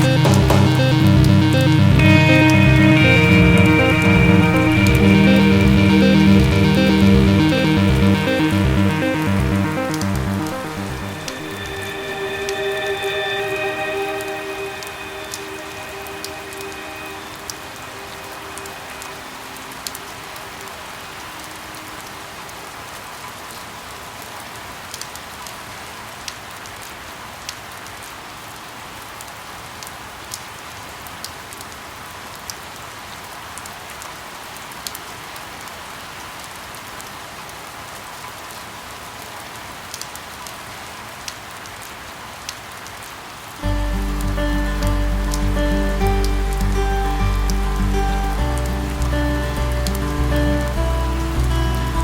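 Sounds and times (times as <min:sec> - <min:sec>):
steady rain hiss: 0:10.7 - 0:52.0.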